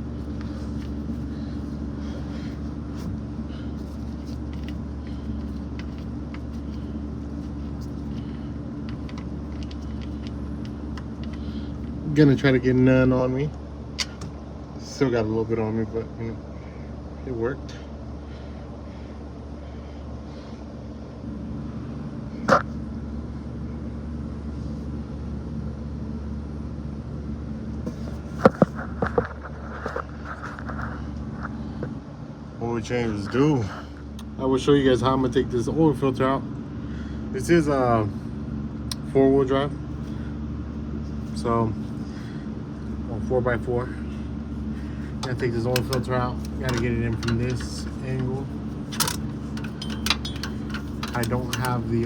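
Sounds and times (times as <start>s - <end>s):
electric fan humming: 0.0s - 52.0s
hand tools clicking: 45.2s - 52.0s
metallic clinks and knocks: 45.2s - 52.0s.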